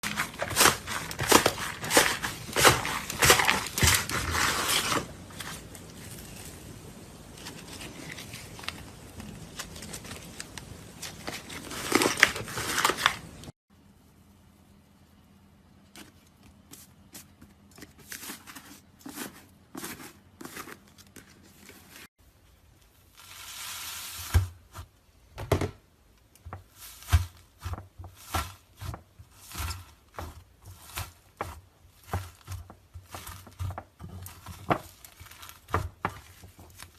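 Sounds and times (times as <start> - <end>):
slime crust crackling: 0.0 - 13.5, 26.6 - 36.9.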